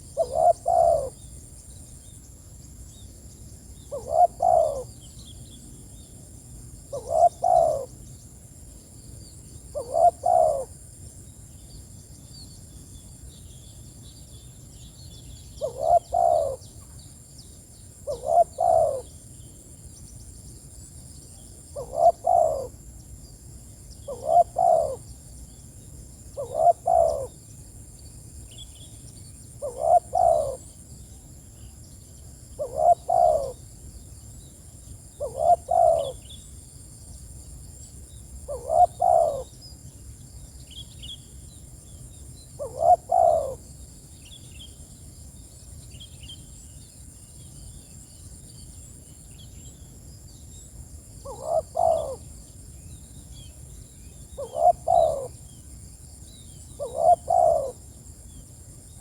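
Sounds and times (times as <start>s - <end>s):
dove cooing: 0.0s - 1.2s, 3.9s - 4.9s, 6.9s - 7.9s, 9.7s - 10.7s, 15.6s - 16.6s, 18.0s - 19.1s, 21.7s - 22.8s, 24.0s - 25.1s, 26.3s - 27.3s, 29.6s - 30.7s, 32.6s - 33.6s, 35.2s - 36.2s, 38.5s - 39.5s, 42.6s - 43.6s, 51.2s - 52.3s, 54.4s - 55.4s, 56.8s - 57.8s
small birds chirping: 13.4s - 20.5s, 21.1s - 27.4s, 28.0s - 36.6s, 37.8s - 43.6s, 44.2s - 59.0s.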